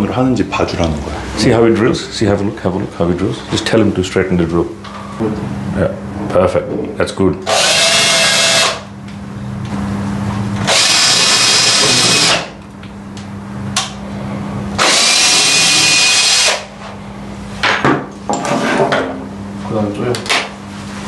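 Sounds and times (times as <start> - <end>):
steady low hum: 0.0 - 21.0
power drill boring into wood: 7.5 - 8.8, 10.6 - 12.5, 14.8 - 16.7.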